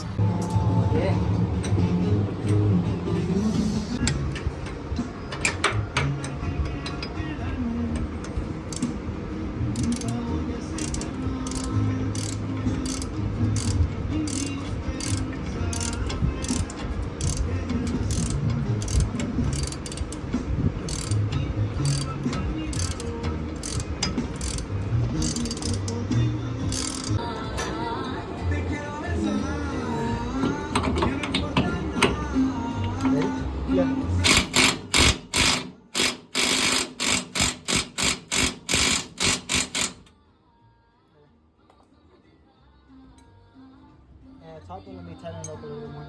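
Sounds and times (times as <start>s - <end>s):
socket ratchet clicking: 8.7s - 9.0s, 9.7s - 10.2s, 10.8s - 27.2s, 34.2s - 40.1s.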